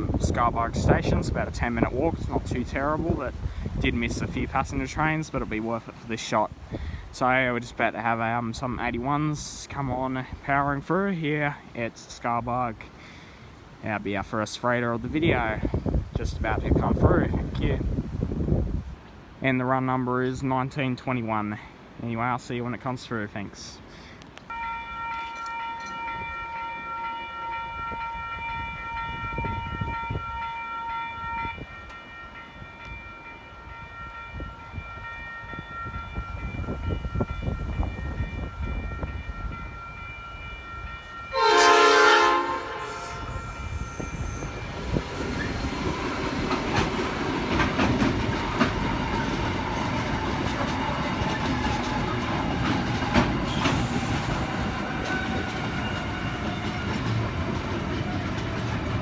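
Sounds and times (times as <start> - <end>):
train rumbling over rails: 0.0 - 11.7, 24.5 - 59.0
level crossing bells ringing: 24.5 - 44.8
locomotive horn: 41.3 - 44.7.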